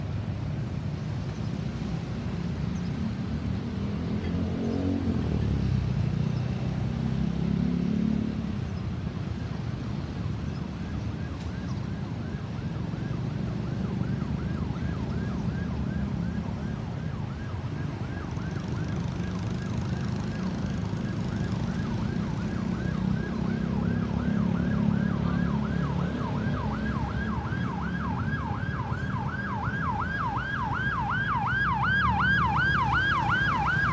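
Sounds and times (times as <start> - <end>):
road traffic rumbling: 0.0 - 33.9
ambulance siren yelping: 9.7 - 33.9.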